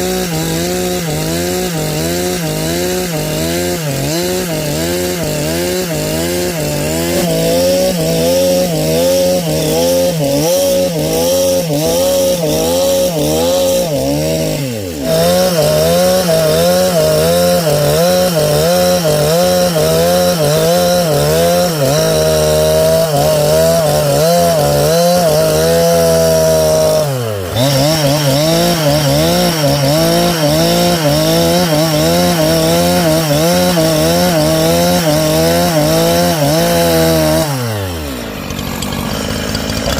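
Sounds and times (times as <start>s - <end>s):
chainsaw cutting through log: 0.0s - 39.9s.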